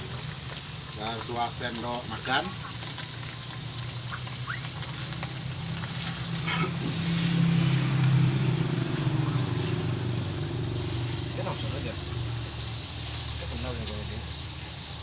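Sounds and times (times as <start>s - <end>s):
spices frying in hot oil: 0.0s - 15.0s
low engine hum: 4.4s - 14.4s.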